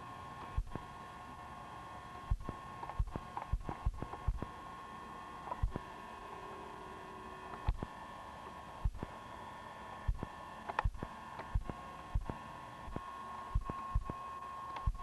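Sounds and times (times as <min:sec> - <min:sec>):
electrical hum: 0:00.0 - 0:15.0
soft low thumps: 0:02.3 - 0:04.4, 0:08.9 - 0:09.1, 0:10.1 - 0:11.0.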